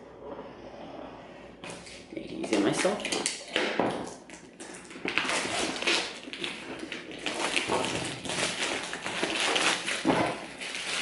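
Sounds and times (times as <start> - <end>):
packaging rustling and scraping: 4.4 - 11.0.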